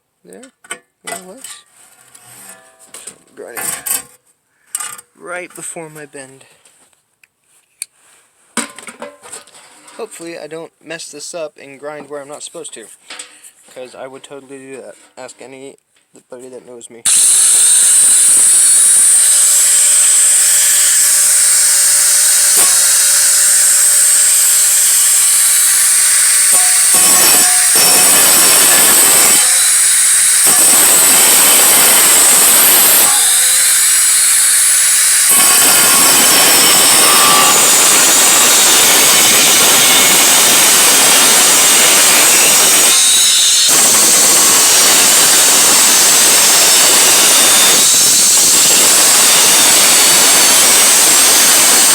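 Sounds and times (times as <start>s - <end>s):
power grinder grinding sheet metal: 17.1s - 51.9s.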